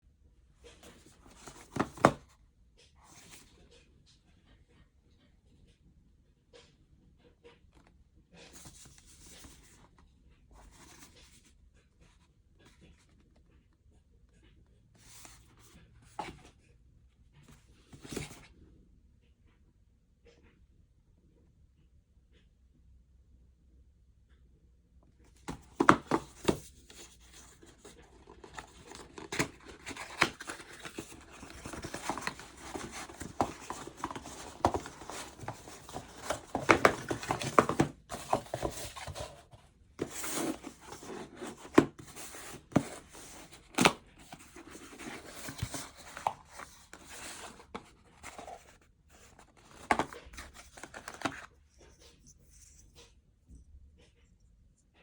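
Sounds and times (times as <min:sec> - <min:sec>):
packaging rustling and tearing: 0:27.4 - 0:39.1.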